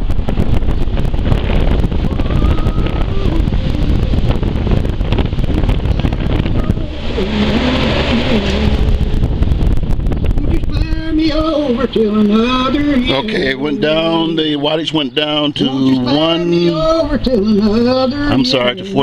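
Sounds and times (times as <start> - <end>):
rough rumbling with crackles: 0.0 - 14.3
man singing on a stereo: 10.3 - 19.0.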